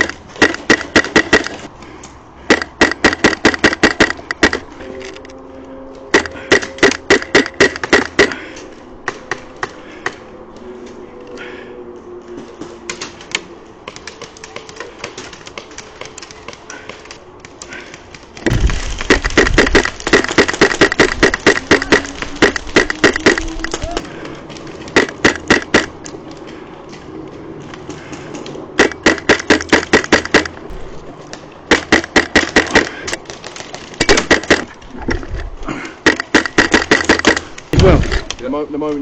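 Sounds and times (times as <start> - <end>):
airsoft rifle rapid shots: 0.0 - 1.7, 2.5 - 4.6, 6.1 - 8.4, 18.4 - 23.6, 24.9 - 26.0, 28.8 - 30.5, 31.7 - 33.1, 34.0 - 34.7, 36.0 - 37.5.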